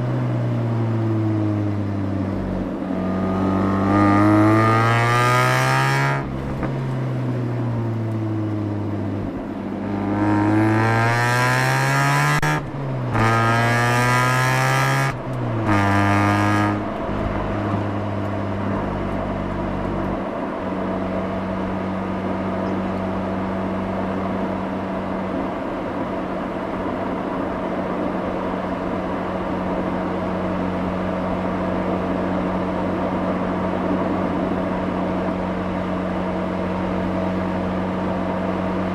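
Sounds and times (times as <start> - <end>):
road noise: 0.0 - 38.9
rotary engine exhaust revving: 2.4 - 7.7, 9.7 - 20.2.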